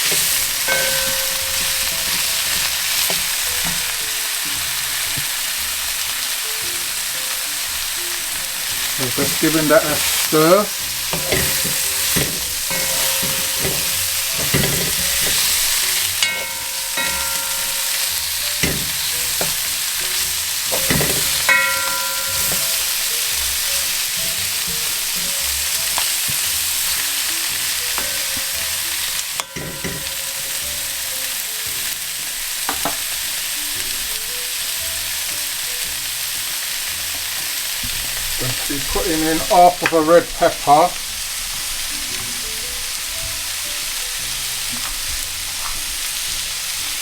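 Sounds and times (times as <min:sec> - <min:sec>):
metallic rings: 0:00.0 - 0:04.0, 0:08.4 - 0:24.3, 0:27.9 - 0:31.1
spoon knocking and scraping a pan: 0:00.0 - 0:34.2, 0:36.3 - 0:47.0
food sizzling in a pan: 0:00.0 - 0:47.0.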